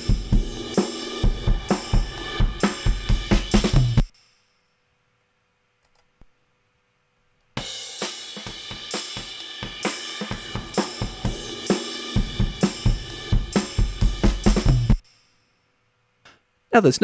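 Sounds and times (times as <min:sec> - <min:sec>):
snare drum: 0:00.0 - 0:04.1, 0:07.9 - 0:15.0
hi-hat: 0:00.0 - 0:04.4, 0:07.8 - 0:15.3
cymbals: 0:00.0 - 0:04.8, 0:07.6 - 0:15.8
kick drum: 0:02.4 - 0:04.1.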